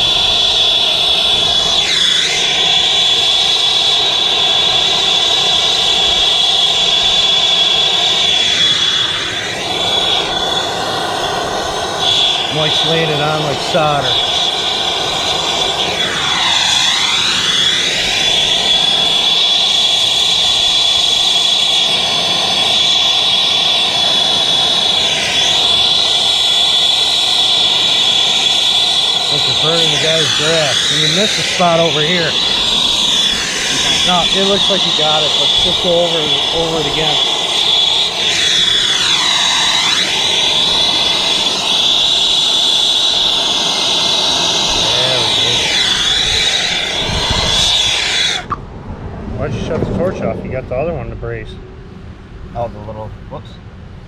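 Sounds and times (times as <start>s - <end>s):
torch flame hissing with high whistle: 0.0s - 50.8s.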